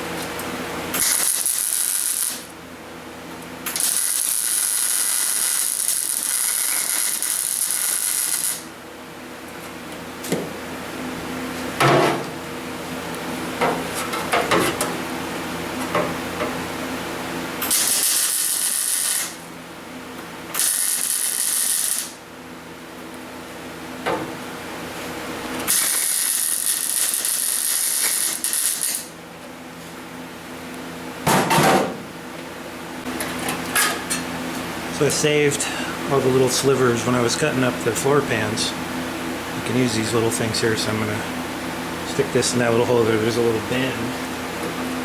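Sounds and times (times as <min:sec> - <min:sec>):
faint machine hum: 0:00.0 - 0:45.0
welder crackling hiss: 0:01.0 - 0:02.5, 0:03.7 - 0:08.7, 0:17.6 - 0:19.4, 0:20.5 - 0:22.2, 0:25.6 - 0:29.1.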